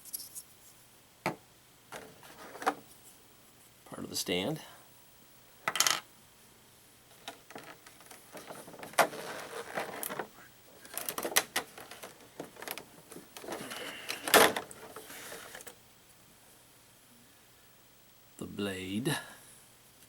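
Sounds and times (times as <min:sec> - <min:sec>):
packaging rustling and scraping: 0:02.0 - 0:02.8, 0:07.1 - 0:15.8.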